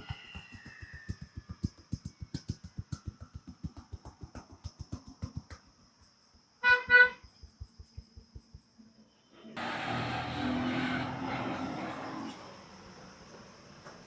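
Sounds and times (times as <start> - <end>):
rapid hand tapping on head: 0.0 - 6.0
vehicle horn beeps: 6.6 - 7.2.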